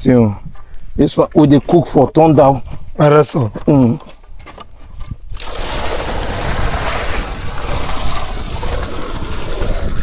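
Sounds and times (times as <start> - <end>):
water pouring and splashing: 5.3 - 10.0.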